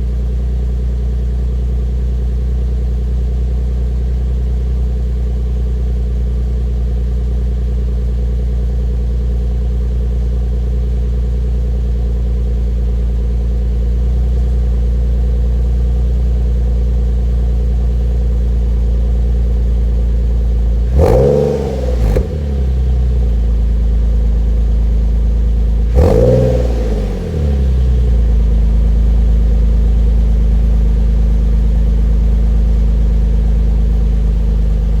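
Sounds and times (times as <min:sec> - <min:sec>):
car engine idling: 0:00.0 - 0:35.0
engine revving: 0:20.8 - 0:23.0, 0:25.9 - 0:28.2.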